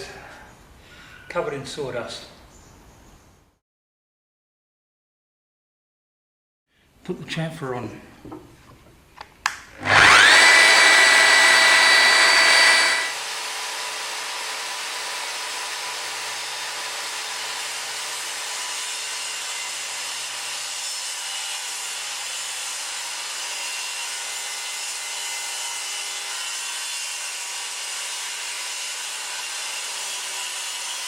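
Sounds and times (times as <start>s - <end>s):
power tool cutting timber: 9.8s - 31.0s.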